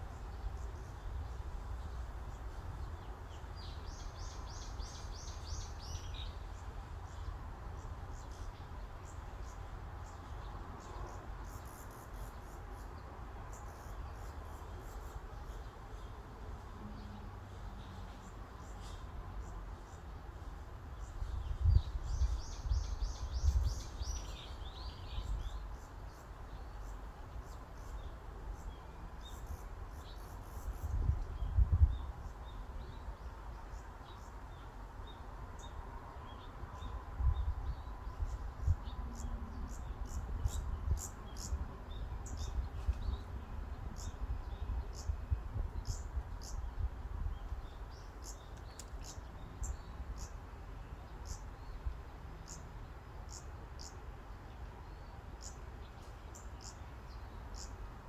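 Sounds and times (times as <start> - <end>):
small birds chirping: 20.9 - 58.0.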